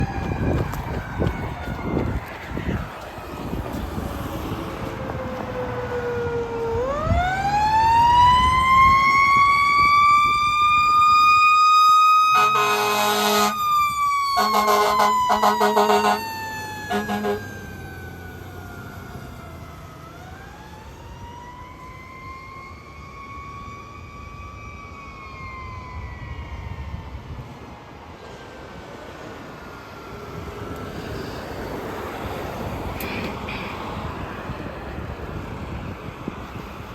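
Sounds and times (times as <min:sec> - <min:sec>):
fire engine siren wailing: 0:00.0 - 0:36.9
air horn blasts: 0:12.3 - 0:13.6, 0:14.4 - 0:17.6
truck engine rumbling: 0:12.3 - 0:22.1.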